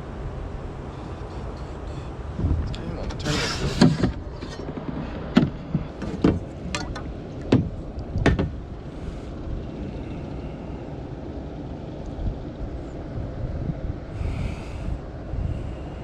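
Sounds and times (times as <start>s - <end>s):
wind buffeting the microphone: 0.0s - 16.0s
sharp knocks and clatters: 3.7s - 8.6s.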